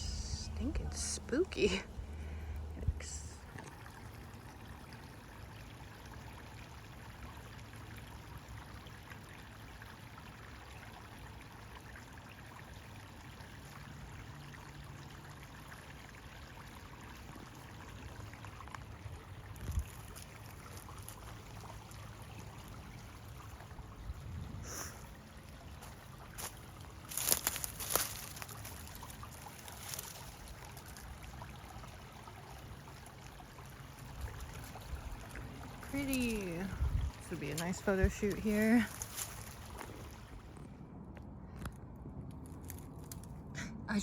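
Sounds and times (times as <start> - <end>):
running water: 0.0 - 40.7.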